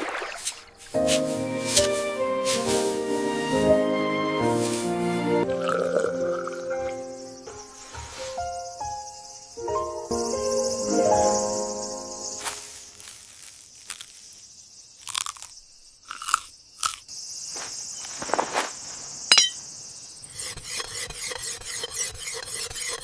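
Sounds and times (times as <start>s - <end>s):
crickets chirping: 0.0s - 20.5s
crisp crunches: 12.4s - 14.4s, 15.0s - 18.8s.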